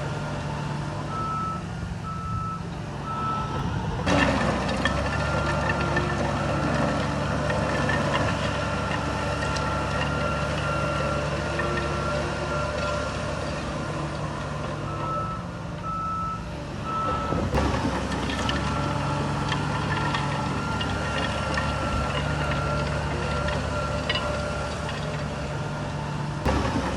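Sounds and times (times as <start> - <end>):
diesel engine running: 0.0 - 26.9.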